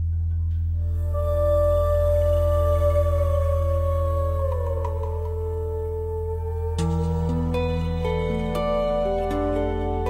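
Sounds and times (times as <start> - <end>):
slow soft instrumental music: 0.0 - 10.0
steady low drone: 0.0 - 10.0.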